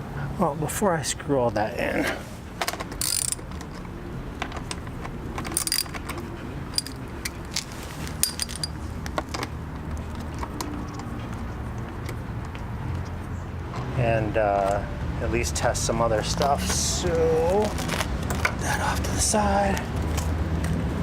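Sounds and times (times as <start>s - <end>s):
metal parts clinking and rattling: 2.6s - 11.1s.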